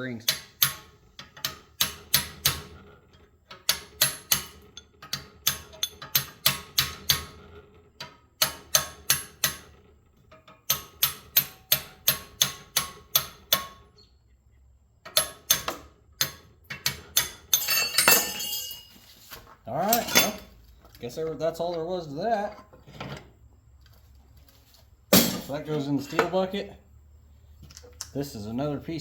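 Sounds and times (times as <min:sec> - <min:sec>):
hammer striking steel: 0:17.2 - 0:19.0.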